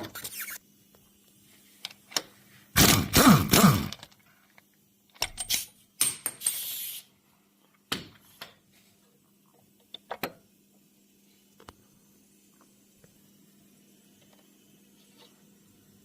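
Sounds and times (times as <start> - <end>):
brief scraping hiss: 6.4 - 7.1.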